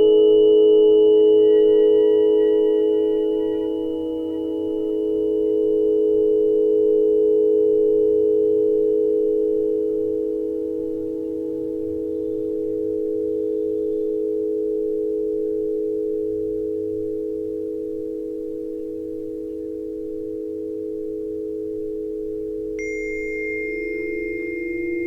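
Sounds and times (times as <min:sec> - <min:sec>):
higher electronic tone: 0:22.8 - 0:25.0
sustained electronic chord: 0:22.8 - 0:25.0.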